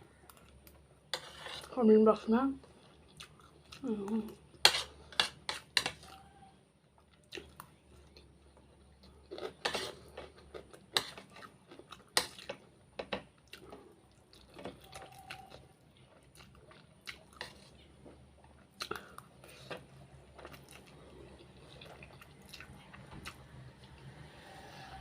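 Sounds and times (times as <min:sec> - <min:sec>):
soft chewing: 0:00.0 - 0:01.8, 0:02.6 - 0:24.6
spoon scraping a plate: 0:01.1 - 0:01.8, 0:04.6 - 0:06.3, 0:09.5 - 0:10.2.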